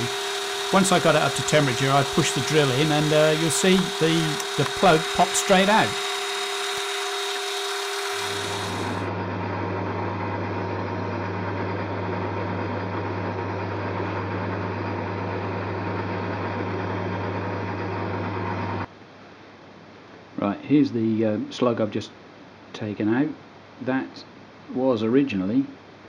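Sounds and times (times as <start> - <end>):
metal lathe humming: 0.0 - 18.9.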